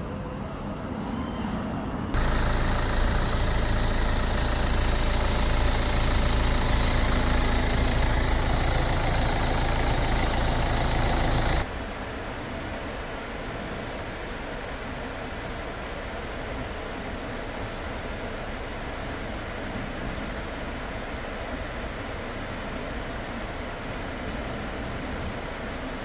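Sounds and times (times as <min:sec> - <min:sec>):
engine idling: 0:02.2 - 0:11.7.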